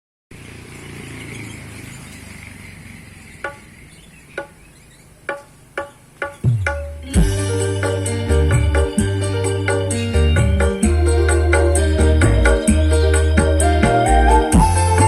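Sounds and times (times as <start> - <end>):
keyboard notes through speakers: 3.5 - 15.0.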